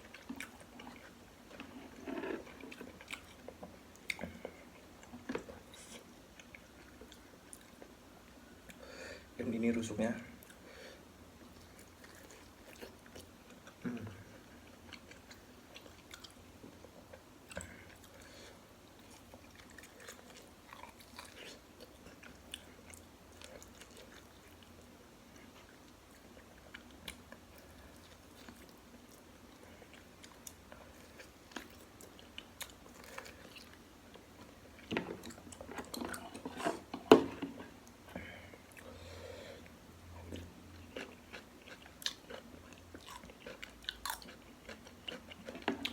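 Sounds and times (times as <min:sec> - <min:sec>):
person chewing and biting: 0:40.2 - 0:45.9.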